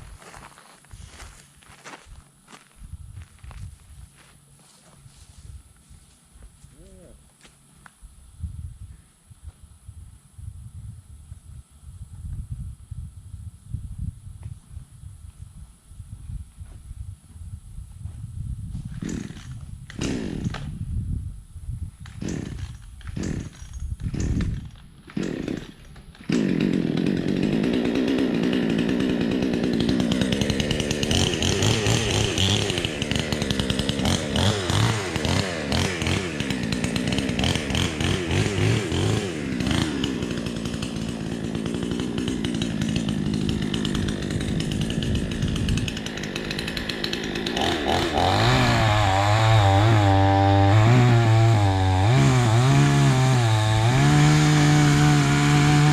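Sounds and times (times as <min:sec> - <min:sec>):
chainsaw cutting wood: 0:18.9 - 0:20.8, 0:22.0 - 0:55.9.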